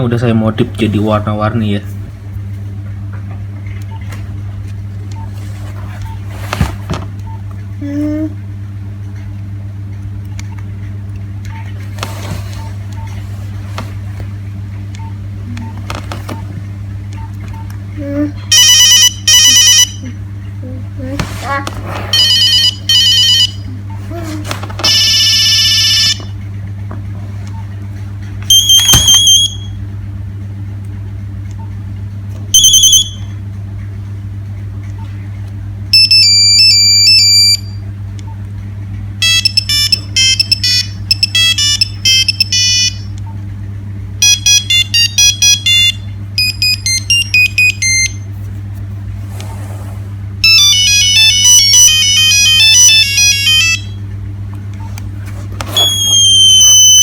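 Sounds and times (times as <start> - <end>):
steady low hum: 0.0 - 57.0
mobile phone ringtone beeps: 18.5 - 20.0, 22.2 - 23.6, 24.9 - 26.2, 28.5 - 29.7, 36.0 - 37.7, 39.2 - 43.0, 44.2 - 48.2, 50.4 - 54.0, 55.8 - 57.0.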